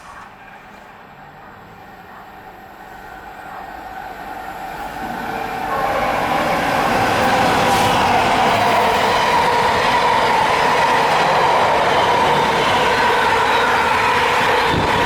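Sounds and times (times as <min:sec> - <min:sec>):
train rumbling on rails: 0:00.0 - 0:15.0
wheels whining on rails: 0:04.1 - 0:15.0.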